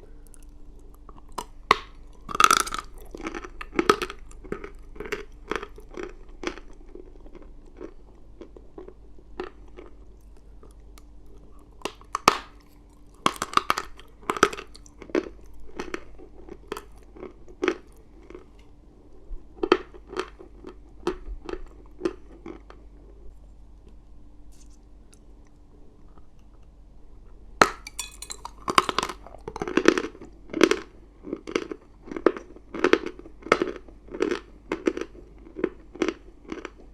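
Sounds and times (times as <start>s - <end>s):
chewing chalk crunches: 0.2s - 18.6s, 28.4s - 36.9s.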